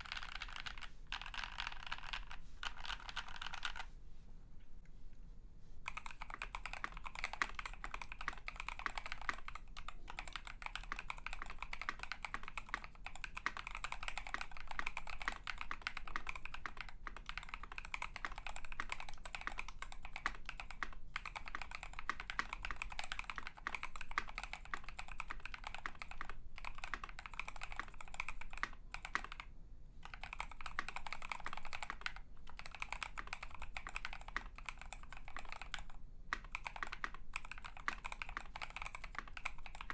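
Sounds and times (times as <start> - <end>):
typing on mechanical keyboard: 0.0 - 3.9, 5.9 - 39.9.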